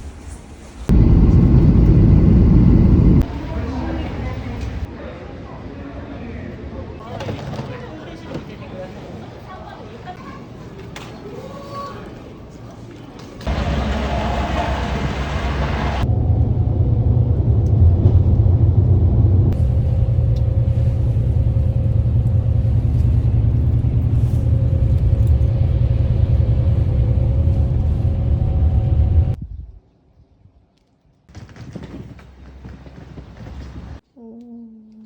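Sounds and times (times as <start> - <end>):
vehicle rumble from inside: 0.8 - 4.9, 13.5 - 29.4.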